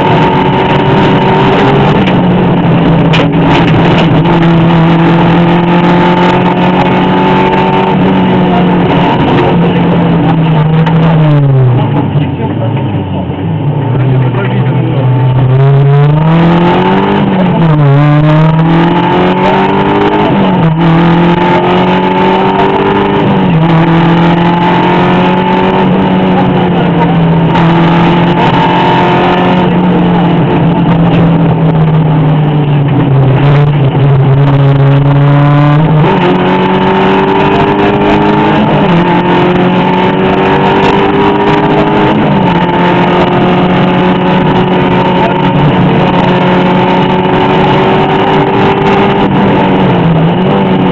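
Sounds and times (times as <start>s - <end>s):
rally car engine shifting gears: 0.0s - 50.9s.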